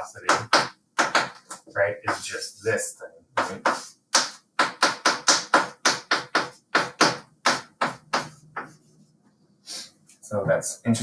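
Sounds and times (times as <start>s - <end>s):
writing strokes on a board: 0.0s - 2.5s, 3.4s - 9.1s.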